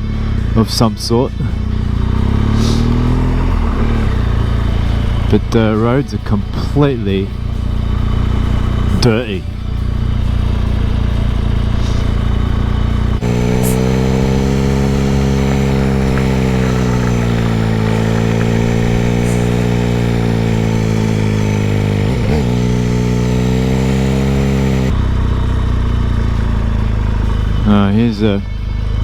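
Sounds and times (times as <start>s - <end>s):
motorcycle engine running: 0.0s - 27.7s.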